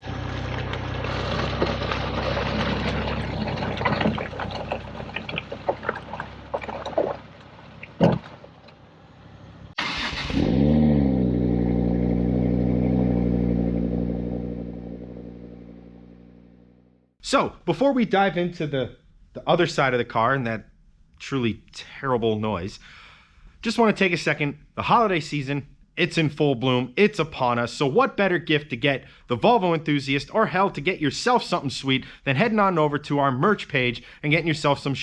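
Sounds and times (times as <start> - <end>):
car front end clattering and knocking: 1.5 - 8.8
car engine note: 7.2 - 17.1.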